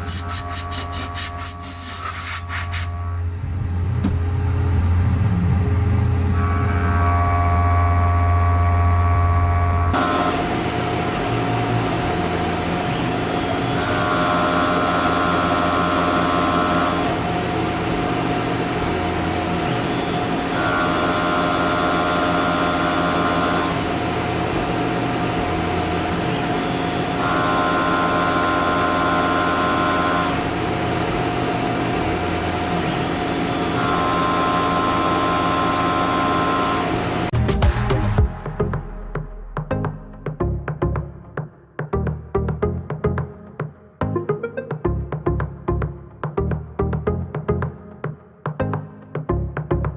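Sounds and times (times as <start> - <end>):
milling machine whine: 0.0 - 37.4
high cutting tone: 0.0 - 40.3
deep loud hum: 0.0 - 40.6.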